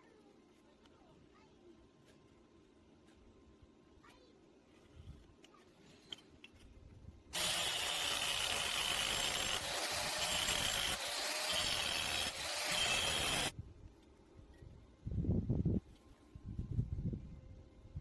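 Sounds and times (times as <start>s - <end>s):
steel pipe cutting hiss: 7.4s - 13.5s.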